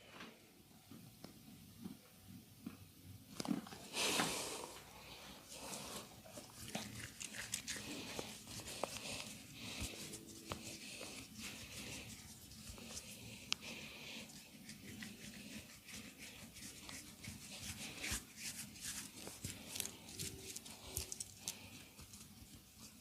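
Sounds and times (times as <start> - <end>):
hands rubbing over body: 5.5 - 23.0.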